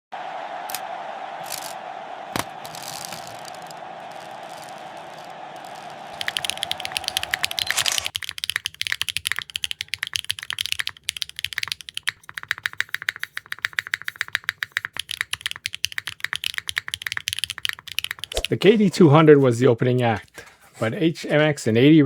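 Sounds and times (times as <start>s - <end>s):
fast mechanical keyboard typing: 5.7s - 18.6s.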